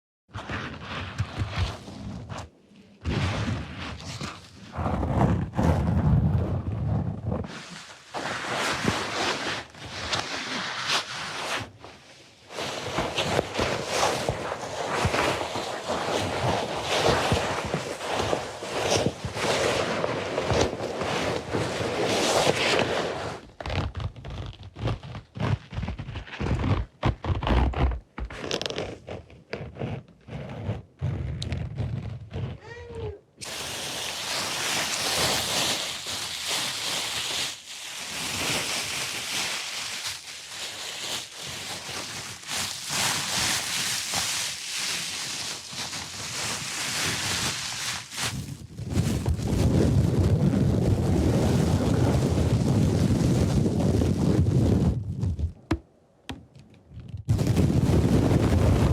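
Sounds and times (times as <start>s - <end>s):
dense scraping rustle: 6.8s - 11.8s, 12.5s - 24.0s
irregular taps and deep thumps: 55.1s - 57.5s.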